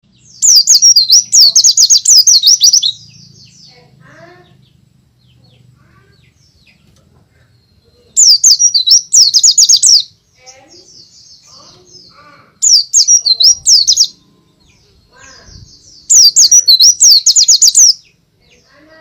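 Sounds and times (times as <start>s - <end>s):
bird singing swooping notes: 8.2s - 10.2s, 12.6s - 18.2s.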